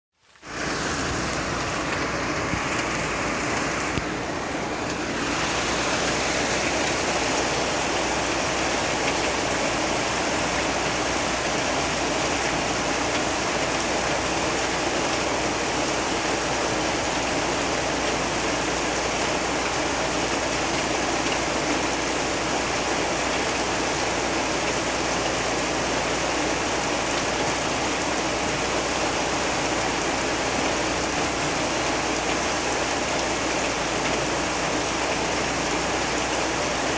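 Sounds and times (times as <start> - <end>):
heavy rain falling: 0.2 - 36.9.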